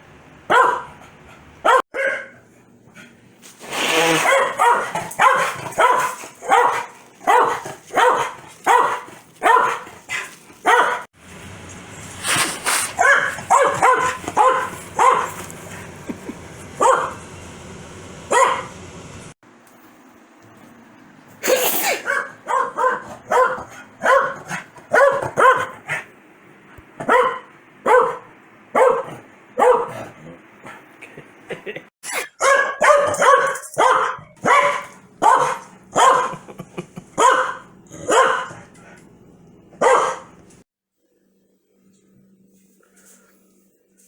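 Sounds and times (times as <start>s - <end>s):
dog barking angrily: 0.5s - 2.4s, 4.1s - 11.1s, 12.6s - 16.0s, 16.7s - 17.3s, 18.3s - 18.8s, 21.9s - 26.1s, 27.0s - 30.8s, 32.2s - 36.5s, 37.1s - 38.7s, 39.8s - 40.4s.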